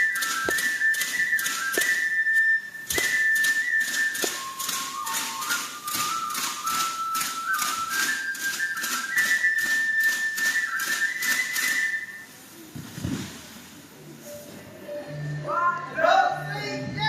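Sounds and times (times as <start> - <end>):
fast percussive beat: 0.0 - 2.1, 2.9 - 9.0
high whistle-like melody: 0.0 - 12.4, 14.3 - 16.9.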